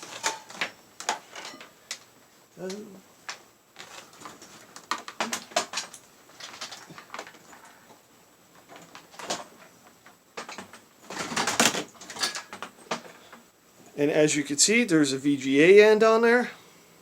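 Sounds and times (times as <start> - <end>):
cable rustling: 0.0 - 13.5.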